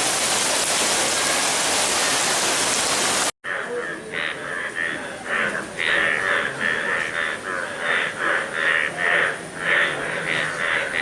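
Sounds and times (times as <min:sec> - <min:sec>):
bullfrogs croaking: 0:03.4 - 0:11.0.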